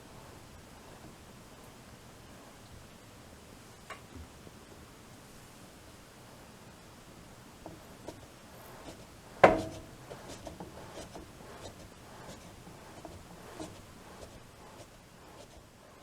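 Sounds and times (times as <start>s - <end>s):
scratchy rubbing and clicks: 7.8s - 16.0s.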